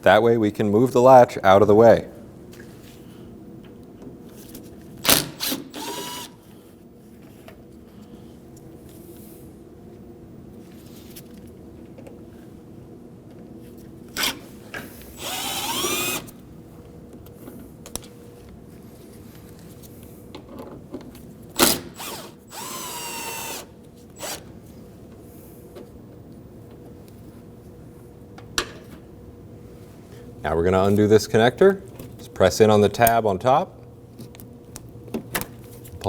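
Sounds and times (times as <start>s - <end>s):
power drill motor whine: 5.4s - 6.4s, 15.2s - 16.4s, 21.6s - 24.4s.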